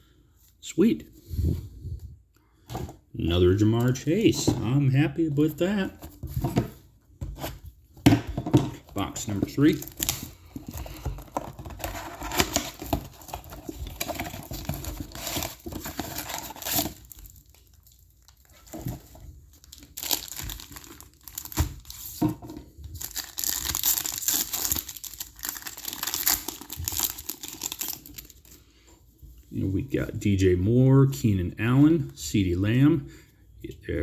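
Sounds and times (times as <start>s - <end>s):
plastic wrapping tearing and crinkling: 9.2s - 18.8s, 19.5s - 22.2s, 22.9s - 28.5s.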